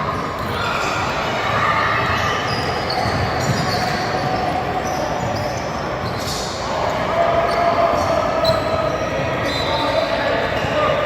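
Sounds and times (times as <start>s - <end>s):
basketball bouncing on court: 2.9s - 4.4s.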